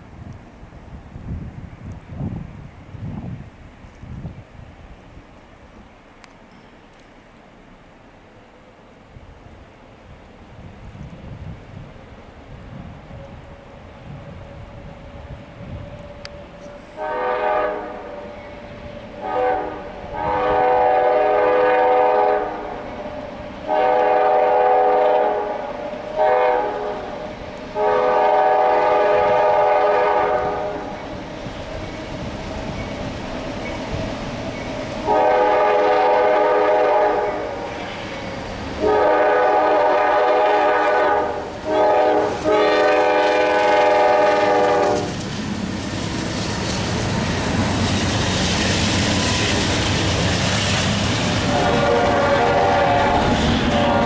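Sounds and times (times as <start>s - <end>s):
passing train rumbling: 0.0s - 54.0s
locomotive air horn: 16.6s - 31.0s, 35.0s - 37.7s, 38.8s - 45.2s, 51.4s - 54.0s.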